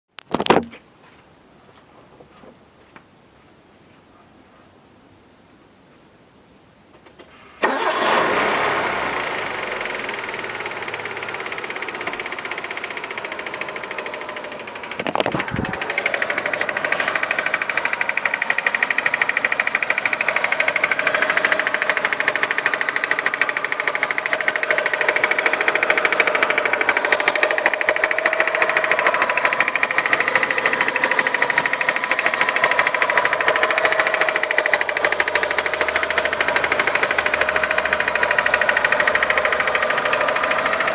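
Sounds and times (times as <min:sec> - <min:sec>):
car engine cranking and idling: 0:07.3 - 0:40.9
rhythmic metallic engine clicking: 0:08.8 - 0:40.9.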